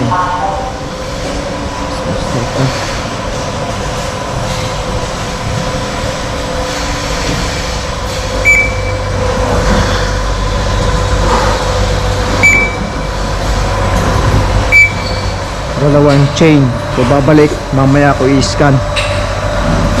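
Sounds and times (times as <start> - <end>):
milking machinery humming: 0.0 - 20.0
short high beeps: 8.4 - 9.1, 12.4 - 12.9, 14.7 - 15.2.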